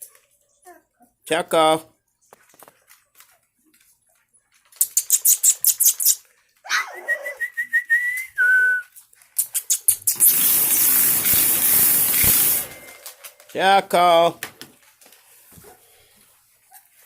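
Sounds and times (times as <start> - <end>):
person making clicking calls: 4.8 - 6.2, 9.3 - 10.4
person whistling: 7.0 - 8.9
loud rustling hiss: 10.1 - 13.0.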